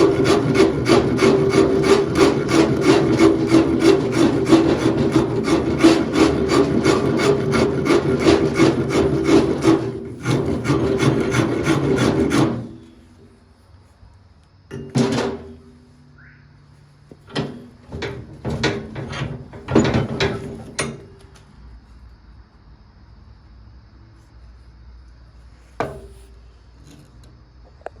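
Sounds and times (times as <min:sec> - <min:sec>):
rasp filing wood: 0:00.0 - 0:12.9.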